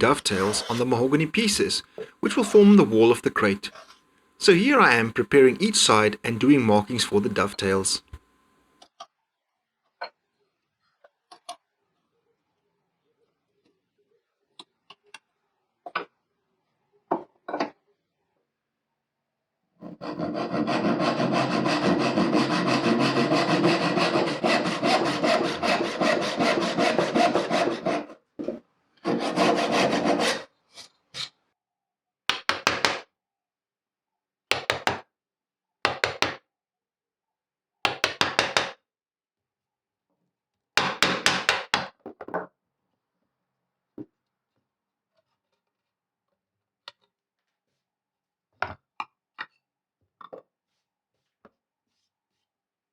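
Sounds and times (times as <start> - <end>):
hand saw cutting wood: 0.0 - 3.5, 19.8 - 28.2, 29.0 - 30.5.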